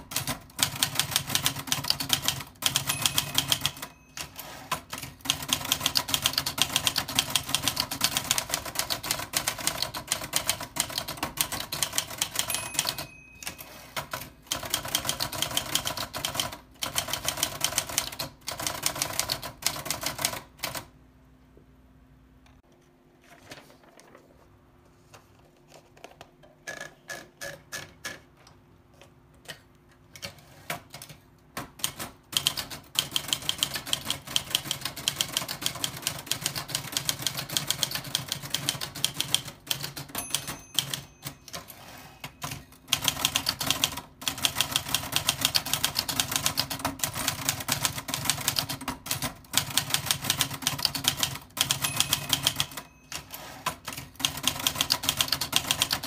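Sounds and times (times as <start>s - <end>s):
typewriter keys clacking: 0.0s - 20.9s, 30.2s - 56.0s
typewriter bell ring: 1.7s - 5.5s, 11.8s - 16.4s, 39.1s - 43.8s, 50.8s - 56.0s.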